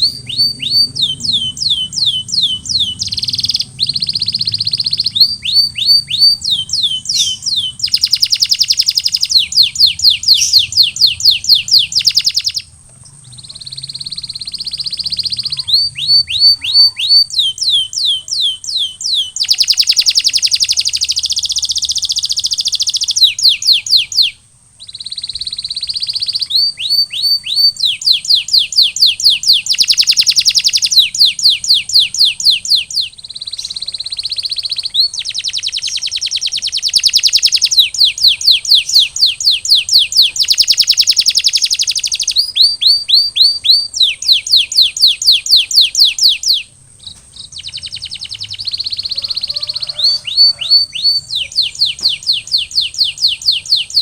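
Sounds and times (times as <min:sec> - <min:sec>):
canary singing: 0:00.0 - 0:54.0.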